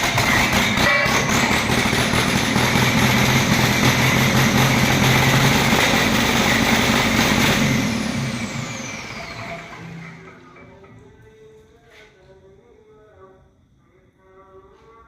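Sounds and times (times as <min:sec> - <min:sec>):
misfiring diesel engine running down: 0:00.0 - 0:11.3.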